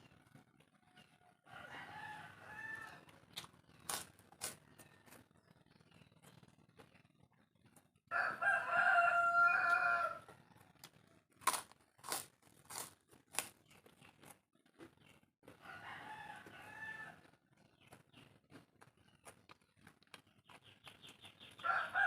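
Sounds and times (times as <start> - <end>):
crunchy chewing: 0.1 - 22.0
rooster crowing: 1.4 - 3.0, 8.1 - 10.7, 15.6 - 17.2, 21.6 - 22.0.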